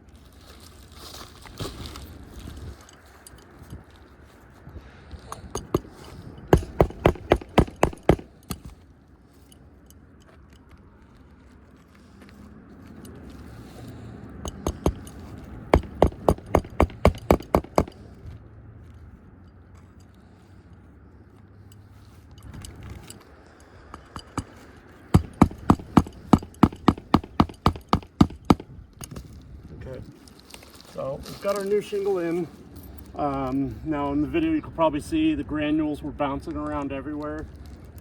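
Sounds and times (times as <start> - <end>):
hammer driving nails: 5.3 - 8.8, 14.5 - 18.0, 23.9 - 29.2.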